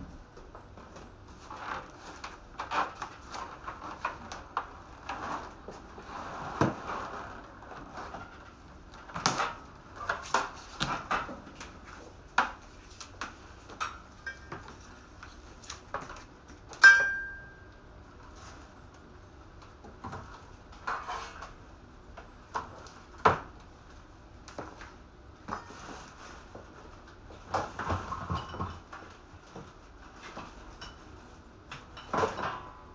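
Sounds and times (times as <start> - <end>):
loud ringing clink: 16.8 - 17.7.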